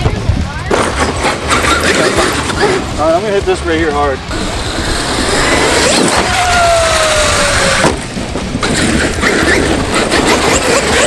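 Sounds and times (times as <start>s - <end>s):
steady rushing noise: 0.0s - 11.0s
electric motor whining: 4.3s - 11.0s.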